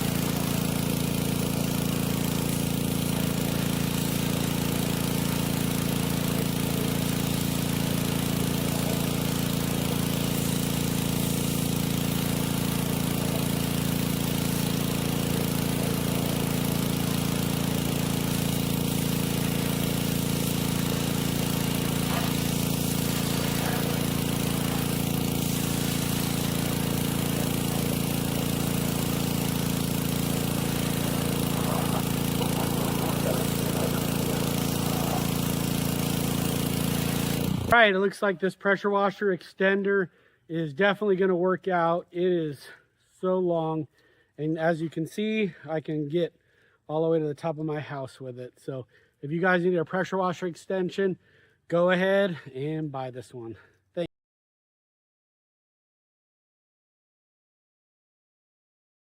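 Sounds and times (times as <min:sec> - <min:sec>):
small gasoline engine running: 0:00.0 - 0:37.8.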